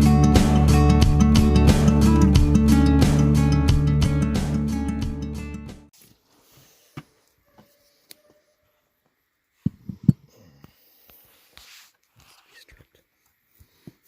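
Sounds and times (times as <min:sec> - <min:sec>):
guitar music: 0:00.0 - 0:05.9.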